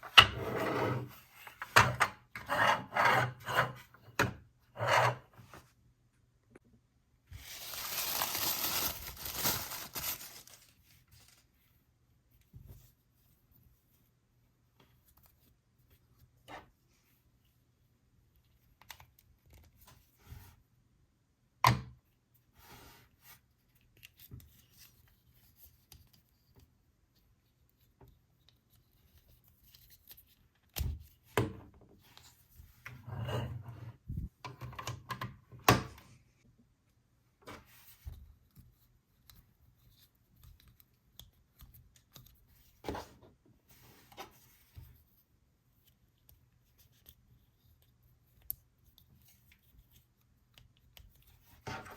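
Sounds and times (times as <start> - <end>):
hands handling plastic toys: 7.3 - 11.6
packaging rustling: 7.4 - 11.4.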